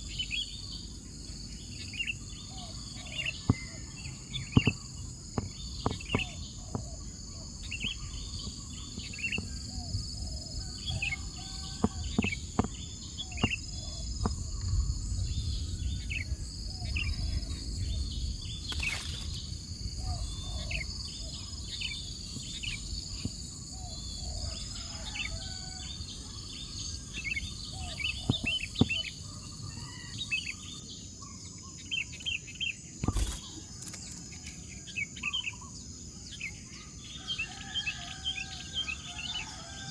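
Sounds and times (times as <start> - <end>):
bird chirps and calls: 0.0 - 19.4, 20.0 - 39.9
low wind rumble: 0.0 - 30.0
insect drone: 0.0 - 39.9.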